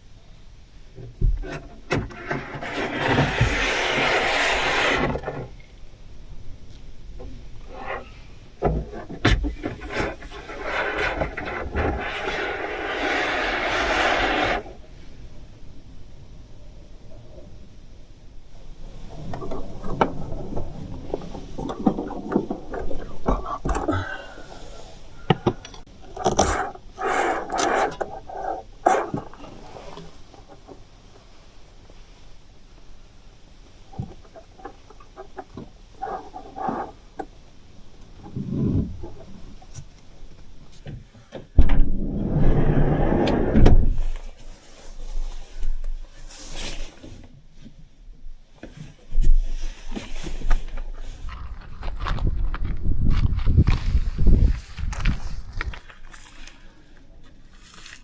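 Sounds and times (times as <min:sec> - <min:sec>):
scraping and rustling: 0:01.2 - 0:05.8, 0:07.2 - 0:14.9, 0:18.6 - 0:32.4, 0:48.6 - 0:58.0
rubbing scraping noise: 0:01.4 - 0:05.6, 0:08.9 - 0:14.8, 0:26.2 - 0:30.0, 0:42.1 - 0:45.5.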